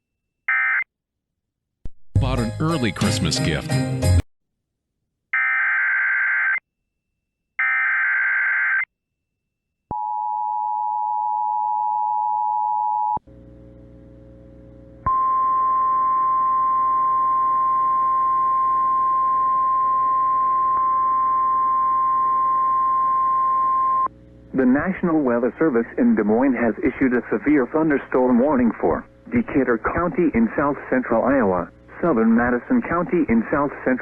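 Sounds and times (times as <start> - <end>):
single-tone warning alarm: 7.6 - 8.9
radio hiss: 24.5 - 34.0.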